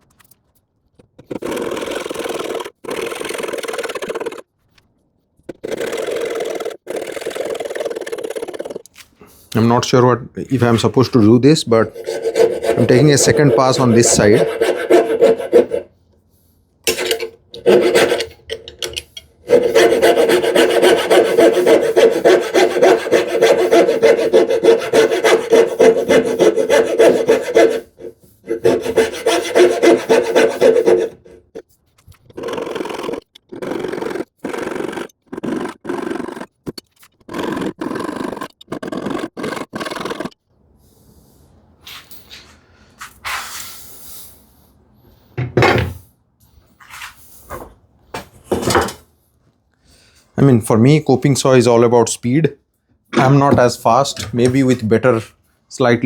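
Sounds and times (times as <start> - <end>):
coping saw cutting wood: 1.2 - 4.5, 5.5 - 8.8, 10.8 - 15.9, 16.9 - 18.4, 19.4 - 40.4.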